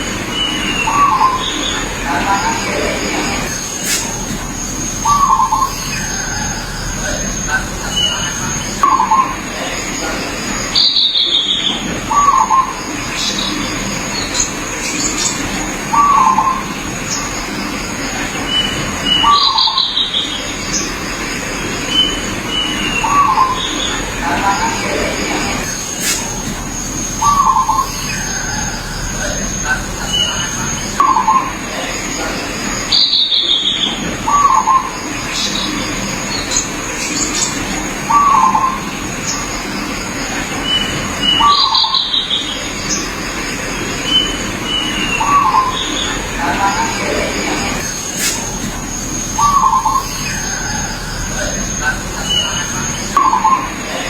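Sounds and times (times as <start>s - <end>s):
dove cooing: 0.0s - 10.9s, 22.1s - 32.4s, 44.2s - 54.0s
birds chirping and whistling: 0.0s - 54.0s
high-pitched background tone: 0.0s - 54.0s.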